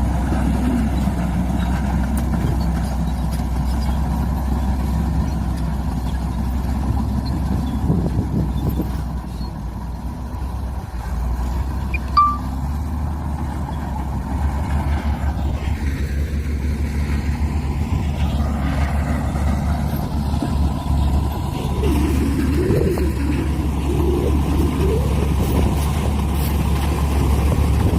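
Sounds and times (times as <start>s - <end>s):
diesel engine rumbling: 0.0s - 27.9s
high-pitched chirp: 11.9s - 12.6s.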